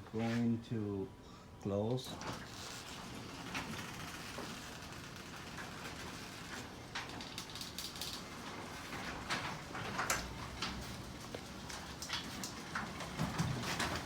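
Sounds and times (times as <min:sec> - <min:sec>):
garage door opener humming: 0:02.1 - 0:14.0.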